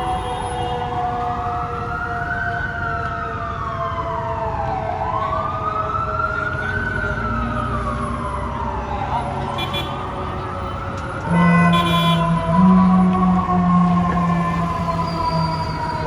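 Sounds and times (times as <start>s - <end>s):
fire truck siren wailing: 0.0s - 16.0s
steady low tone: 11.3s - 16.0s.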